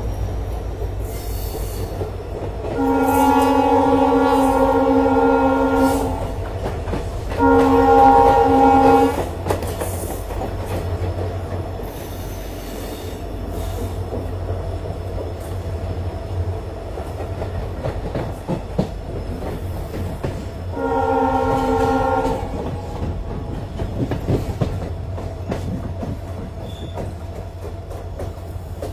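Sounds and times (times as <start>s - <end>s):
locomotive horn blast: 2.8s - 6.4s, 7.4s - 9.3s, 20.7s - 23.0s.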